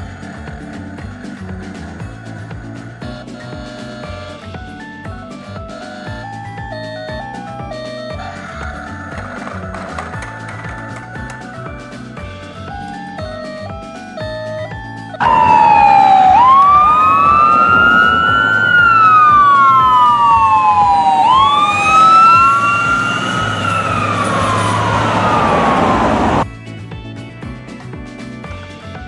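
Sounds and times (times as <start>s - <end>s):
emergency siren wailing: 5.8s - 26.4s
second siren tone: 12.7s - 26.4s.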